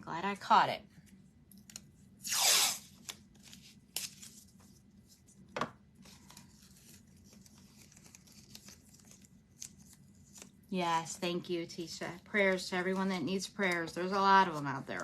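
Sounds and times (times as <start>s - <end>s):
tape ripping from roll: 2.2s - 4.4s.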